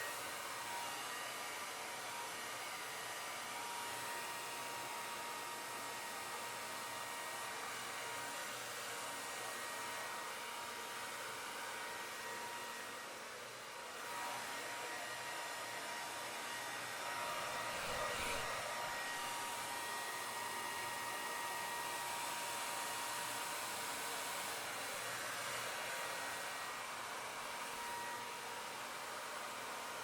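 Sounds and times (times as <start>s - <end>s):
hair dryer running: 0.0s - 30.0s.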